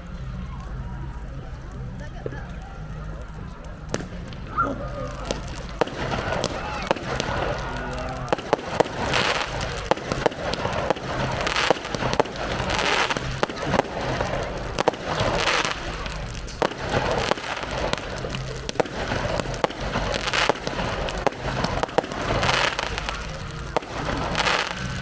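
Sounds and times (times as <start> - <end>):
hissing crackle of fireworks: 0.0 - 25.0
fireworks bangs: 1.3 - 25.0.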